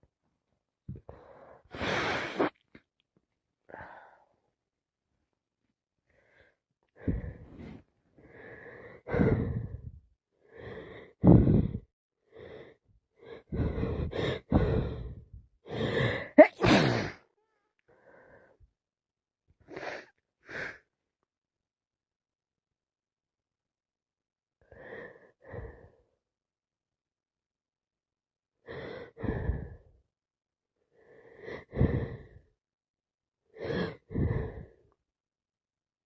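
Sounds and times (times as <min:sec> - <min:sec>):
gasping in-breaths: 0:06.1 - 0:17.2, 0:28.6 - 0:30.0, 0:30.9 - 0:32.6, 0:33.5 - 0:35.0
woman sneezing: 0:16.4 - 0:17.2.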